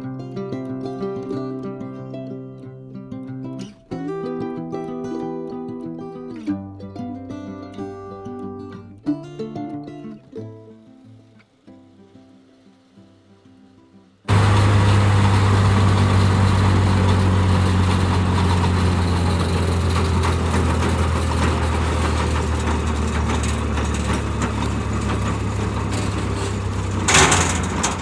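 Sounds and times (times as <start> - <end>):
large engine running: 14.3 - 28.0.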